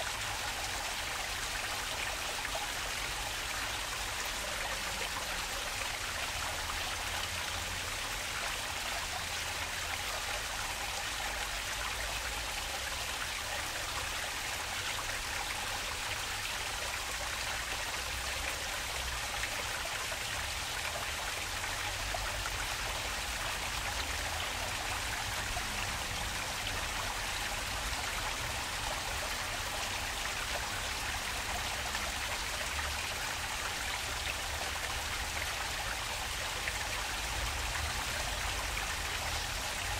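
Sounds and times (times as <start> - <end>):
stream water rushing: 0.0 - 39.9.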